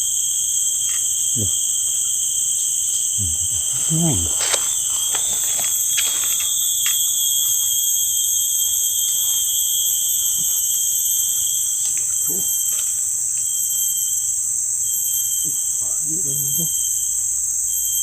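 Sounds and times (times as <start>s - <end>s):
insect chorus: 0.0s - 18.0s.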